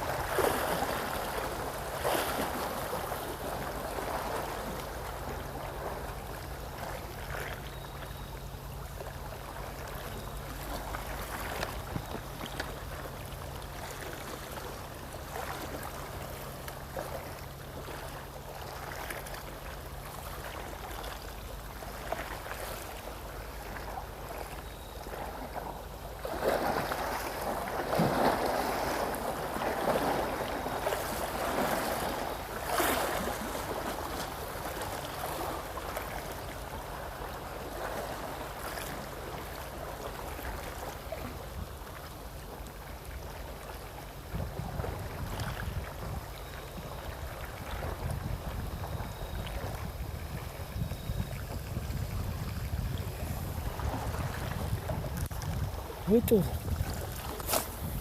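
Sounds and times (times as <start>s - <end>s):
sea water rushing on shore: 0.0s - 58.0s
steady low hum: 0.0s - 58.0s
wind buffeting microphone: 44.3s - 58.0s.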